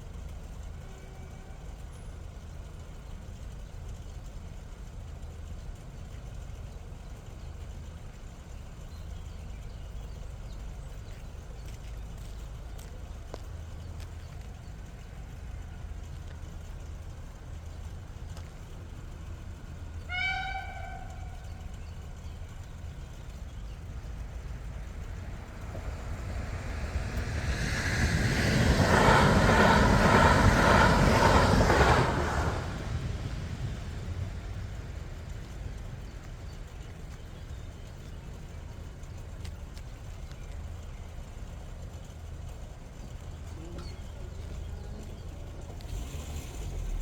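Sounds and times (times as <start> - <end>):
train wheels clattering on rails: 10.1 - 47.0
train horn toot: 20.0 - 21.9.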